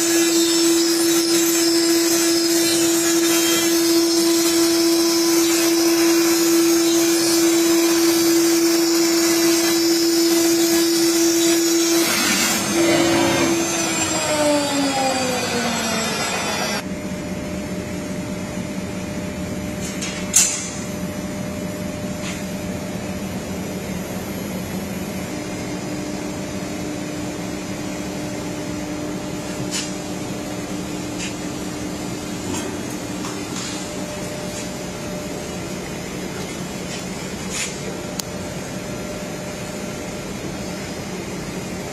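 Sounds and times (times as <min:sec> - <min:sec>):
cnc router humming: 0:00.0 - 0:19.4.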